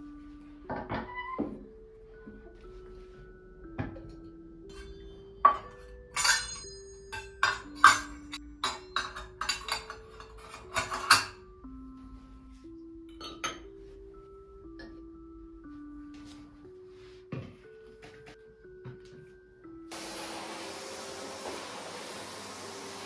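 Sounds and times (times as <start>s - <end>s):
soft melodic background music: 0.0s - 23.0s
dishes and cutlery clinking: 3.8s - 11.5s, 13.1s - 13.7s.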